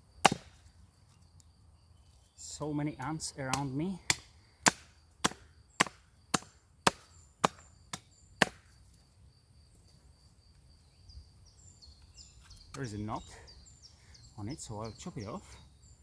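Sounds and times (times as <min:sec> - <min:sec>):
machete chopping wood: 0:00.2 - 0:00.7, 0:03.4 - 0:08.7.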